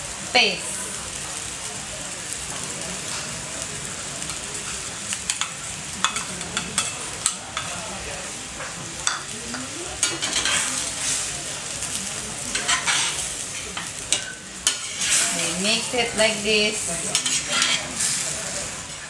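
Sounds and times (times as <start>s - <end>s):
food sizzling in oil: 0.0s - 19.0s
utensil scraping pan: 12.5s - 13.2s, 14.6s - 15.8s, 16.7s - 18.2s.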